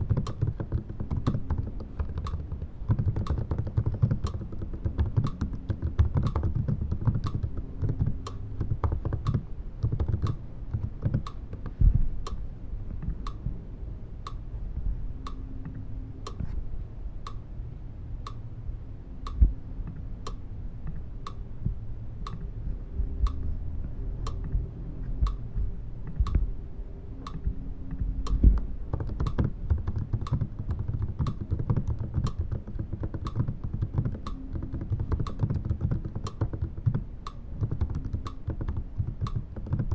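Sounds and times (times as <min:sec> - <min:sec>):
fingers typing on keyboard: 0:00.0 - 0:11.8, 0:28.2 - 0:39.9
steady even ticking: 0:00.0 - 0:13.6, 0:14.2 - 0:16.5, 0:17.2 - 0:17.6, 0:18.2 - 0:39.9.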